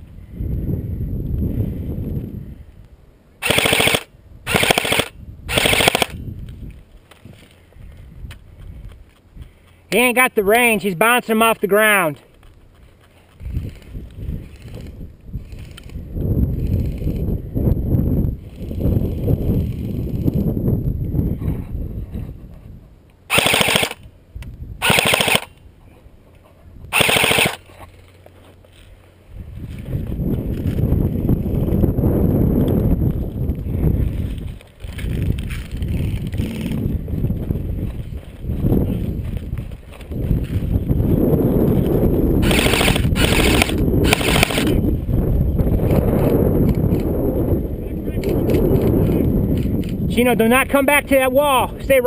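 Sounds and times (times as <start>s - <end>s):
airsoft rifle full-auto bursts: 3.4s - 6.2s, 23.3s - 24.0s, 24.8s - 25.6s, 26.9s - 27.6s, 42.4s - 44.7s.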